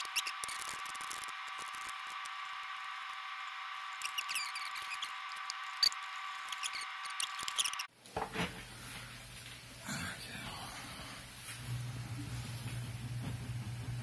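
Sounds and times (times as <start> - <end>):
steady high whine: 0.0 - 7.9
small parts clicking and tapping: 4.0 - 7.9.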